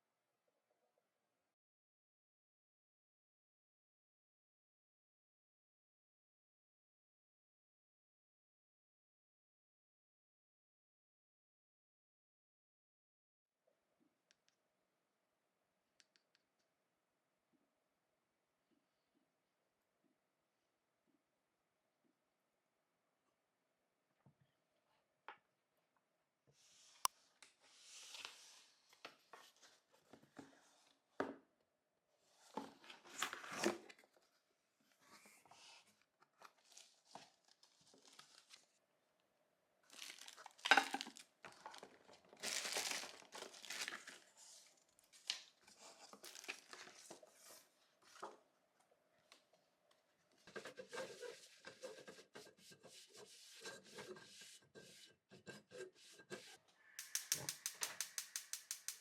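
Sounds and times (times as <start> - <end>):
packaging torn and crinkled: 39.9 - 44.2, 46.2 - 47.0
small clicks and knocks: 57.0 - 59.0.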